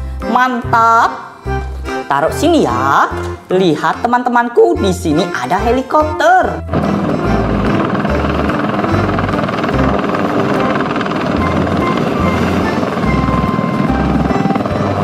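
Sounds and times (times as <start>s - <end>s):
background music with bass line: 0.0s - 10.7s
helicopter rotor chopping: 6.5s - 15.0s.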